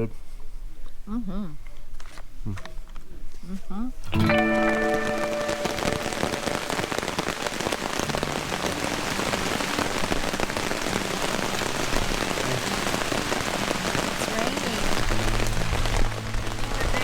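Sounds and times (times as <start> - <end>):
heavy rain on tent fabric: 4.2 - 17.0.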